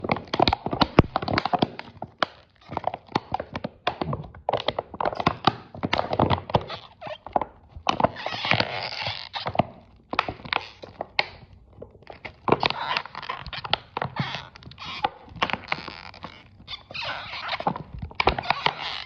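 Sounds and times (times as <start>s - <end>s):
plastic bottle crackling: 0.0s - 19.0s.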